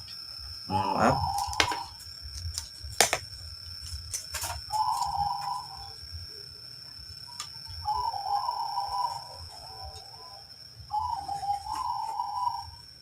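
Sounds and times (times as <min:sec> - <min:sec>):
dove cooing: 0:00.7 - 0:01.9, 0:04.7 - 0:05.9, 0:07.8 - 0:12.8.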